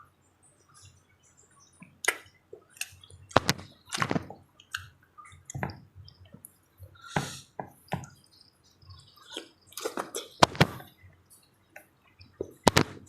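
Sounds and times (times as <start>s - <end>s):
wet chewing and lip-smacking: 1.6s - 7.0s, 8.1s - 11.5s.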